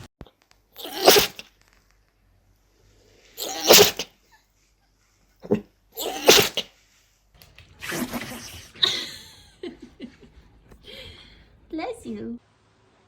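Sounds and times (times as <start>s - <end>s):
dog snorting: 0.8s - 1.4s, 3.4s - 4.1s, 5.4s - 6.7s
dog sneezing: 0.8s - 1.5s, 3.4s - 4.2s, 5.4s - 6.7s.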